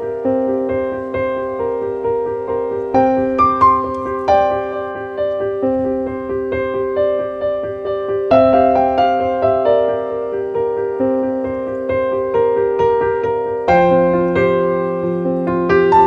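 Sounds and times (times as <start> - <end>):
gentle piano music: 0.0 - 16.0.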